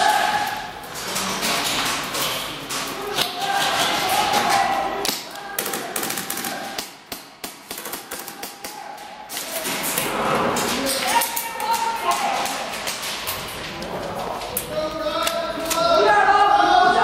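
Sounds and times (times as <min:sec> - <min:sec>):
indistinct shouting: 0:00.0 - 0:00.8
airsoft guns firing: 0:05.0 - 0:08.8.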